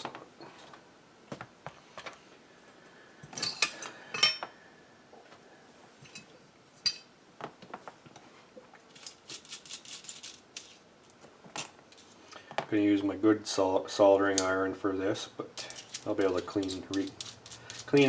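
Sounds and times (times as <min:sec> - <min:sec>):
metal screws clinking into container: 0:08.9 - 0:10.8, 0:15.6 - 0:18.0
small parts clicking: 0:15.6 - 0:18.0.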